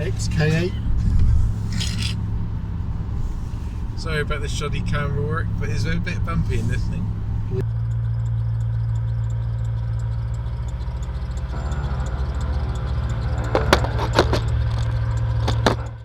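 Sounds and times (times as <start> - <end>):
sharp rattles in car cabin: 0.0 - 7.6
car engine and tyres drone: 0.0 - 16.0.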